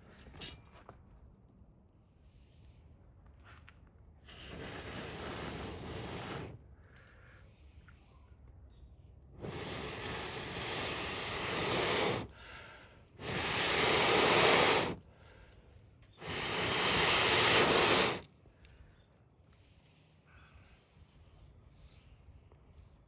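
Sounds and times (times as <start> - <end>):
person blowing on embers: 4.2 - 8.0, 9.3 - 18.8.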